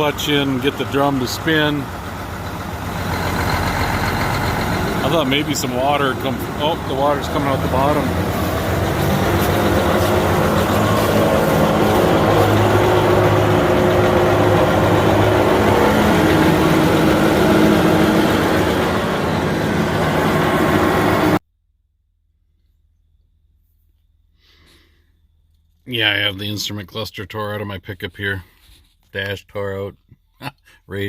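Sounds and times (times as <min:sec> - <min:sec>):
wood chipper engine running: 0:00.0 - 0:21.4.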